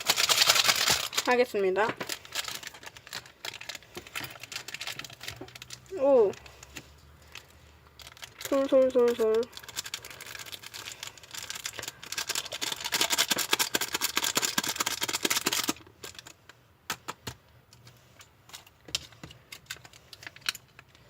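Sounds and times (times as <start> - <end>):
plastic packet crinkling and rattling: 0.0 - 17.2, 17.9 - 21.0.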